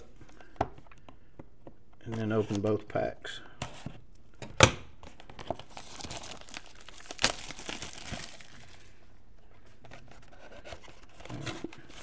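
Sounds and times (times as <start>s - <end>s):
packaging crinkling and tearing: 5.0s - 9.1s.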